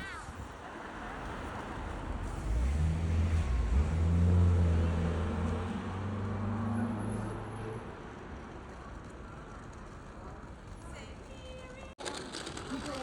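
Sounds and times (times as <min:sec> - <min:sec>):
vehicle engine passing by: 0:02.0 - 0:08.0.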